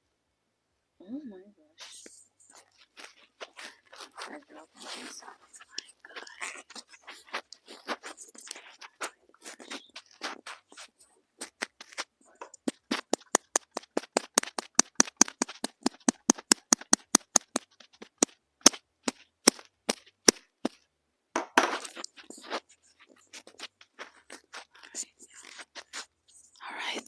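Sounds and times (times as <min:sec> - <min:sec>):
taps on microphone: 0:12.4 - 0:20.0.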